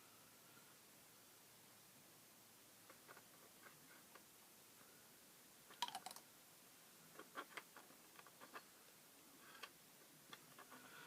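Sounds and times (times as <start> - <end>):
plastic model parts clicking: 5.8 - 6.2.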